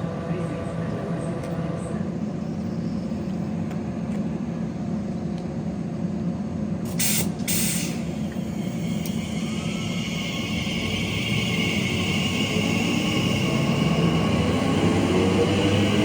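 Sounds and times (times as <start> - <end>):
train rumbling: 0.0 - 16.0
air brake hisses: 6.9 - 13.3.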